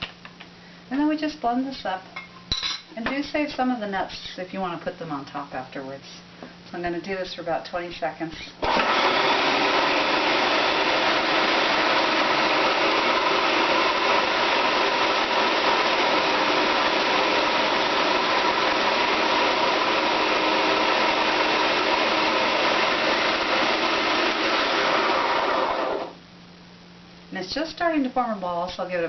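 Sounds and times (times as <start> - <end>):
food processor motor running: 8.6 - 26.2.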